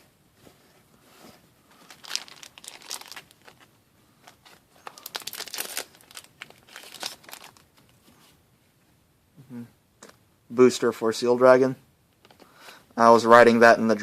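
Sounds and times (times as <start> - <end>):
foil wrapper tearing and crinkling: 1.9 - 3.7, 4.8 - 7.7.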